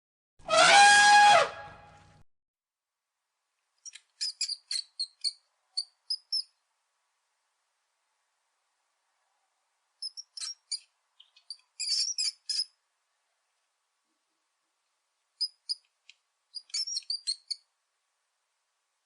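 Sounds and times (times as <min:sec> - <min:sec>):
small animal chirps and squeaks: 0:03.8 - 0:06.6, 0:10.0 - 0:12.8, 0:15.4 - 0:15.9, 0:16.5 - 0:17.7.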